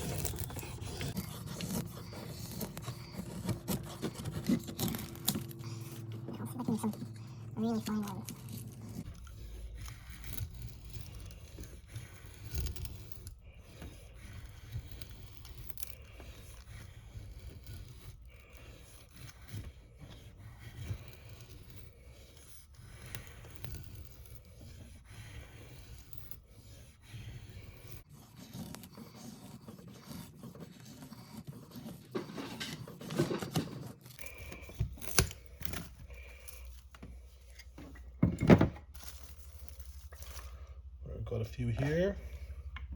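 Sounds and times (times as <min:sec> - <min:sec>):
knife scraping wood: 0:00.0 - 0:42.9.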